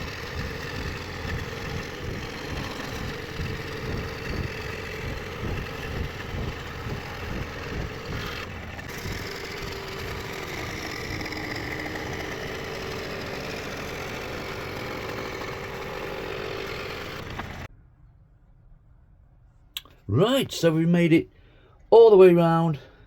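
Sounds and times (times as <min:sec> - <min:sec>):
scroll saw buzzing: 0:00.0 - 0:17.7.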